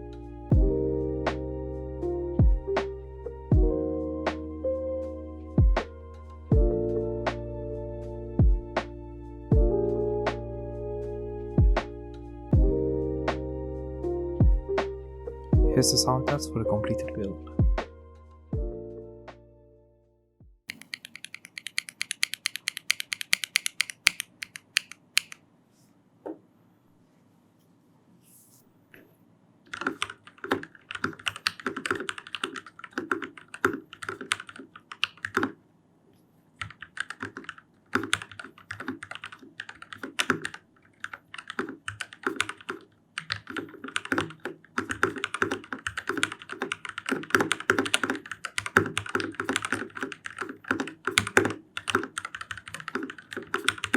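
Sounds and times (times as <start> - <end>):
mechanical keyboard typing: 20.7 - 25.4, 29.7 - 35.6, 36.6 - 53.9.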